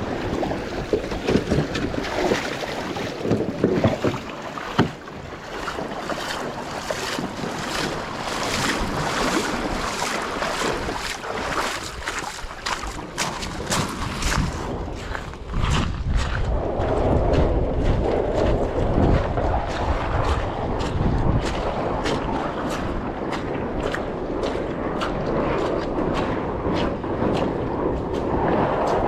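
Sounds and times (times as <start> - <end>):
shallow creek rushing: 0.0 - 15.6
wind buffeting microphone: 0.0 - 29.0
short splashes or knocks: 0.2 - 15.3.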